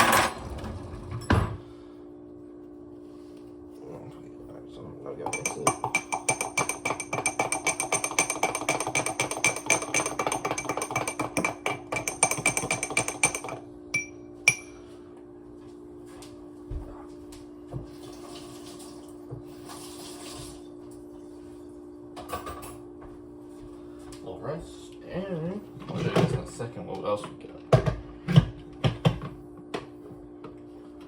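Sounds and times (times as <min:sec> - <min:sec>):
spoon clinking in a cup: 0:05.3 - 0:14.8
spoon tapping cup rim: 0:05.3 - 0:14.8.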